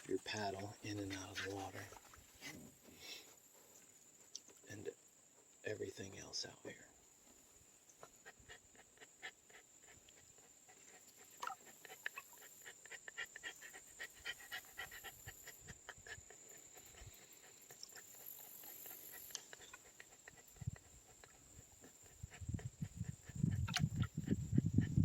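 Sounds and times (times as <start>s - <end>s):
small dog panting: 0.3s - 2.1s, 8.0s - 25.0s.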